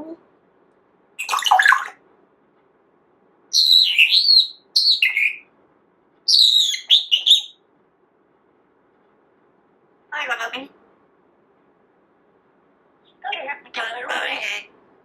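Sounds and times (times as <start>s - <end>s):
parrot whistling calls: 1.2s - 2.0s, 3.6s - 5.4s, 6.3s - 7.6s.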